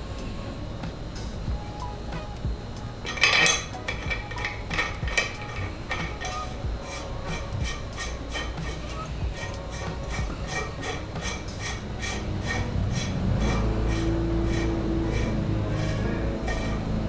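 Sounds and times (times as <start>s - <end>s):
metal tools clinking: 1.4s - 17.0s.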